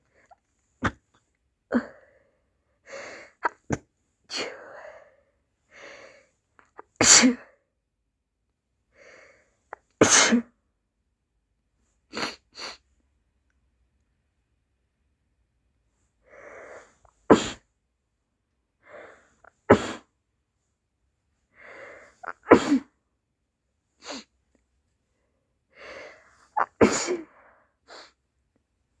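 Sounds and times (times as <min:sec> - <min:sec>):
person sneezing: 0:00.8 - 0:01.0, 0:07.0 - 0:07.4, 0:10.0 - 0:10.5, 0:17.3 - 0:17.6, 0:19.6 - 0:20.1, 0:22.2 - 0:22.9, 0:26.5 - 0:28.2.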